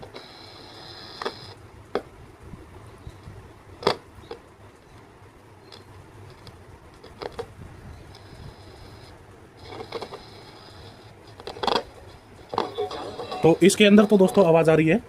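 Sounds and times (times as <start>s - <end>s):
faint high steady tone: 12.5s - 15.0s.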